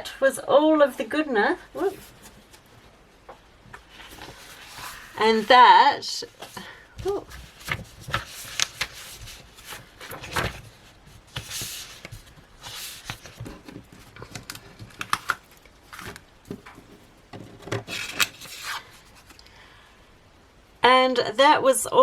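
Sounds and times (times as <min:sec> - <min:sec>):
paper and sticker sheets rustling: 0:03.7 - 0:19.4.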